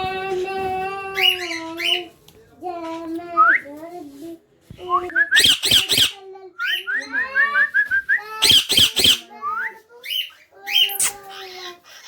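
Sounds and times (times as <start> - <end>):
parrot whistling: 5.2 - 6.2, 8.4 - 9.3
parrot screeching: 5.4 - 6.8, 8.4 - 9.3.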